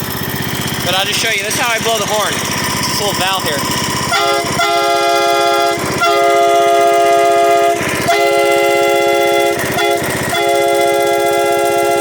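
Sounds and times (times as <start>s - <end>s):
train horn chord: 3.8s - 12.0s.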